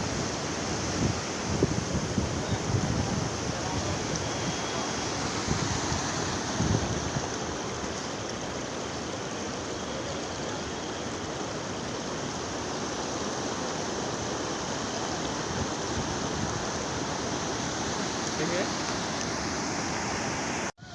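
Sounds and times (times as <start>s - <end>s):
wind buffeting microphone: 0.0s - 8.0s
floodwater rushing: 0.0s - 20.9s.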